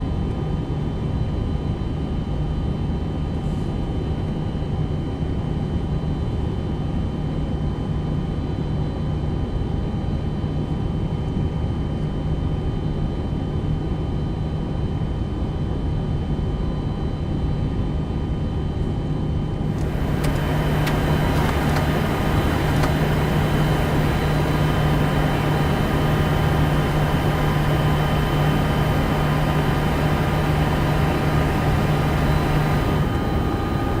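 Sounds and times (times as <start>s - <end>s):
machinery hum: 19.7s - 34.0s.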